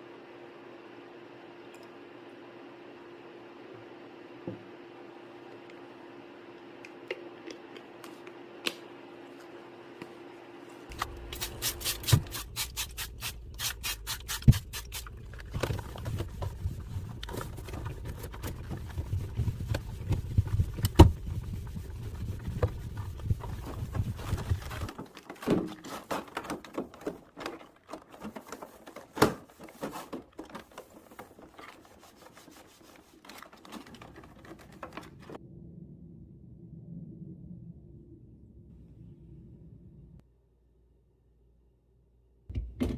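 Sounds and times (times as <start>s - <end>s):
rubbing and scraping on a surface: 10.9s - 35.4s.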